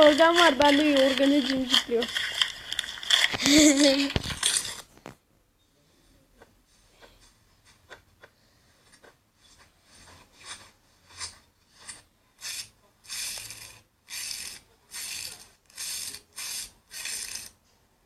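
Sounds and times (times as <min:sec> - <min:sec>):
scratchy rasping scraping strokes: 0:09.4 - 0:17.6.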